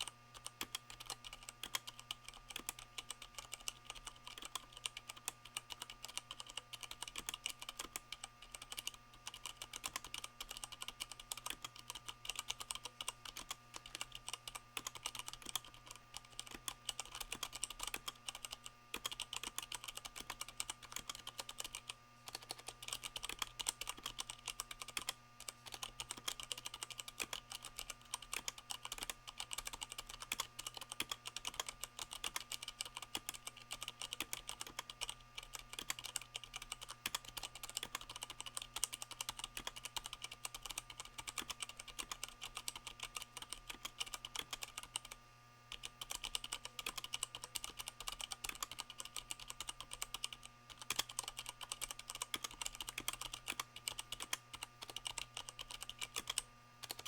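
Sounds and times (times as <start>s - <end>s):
fast typing on mechanical keyboard: 0.0s - 57.0s.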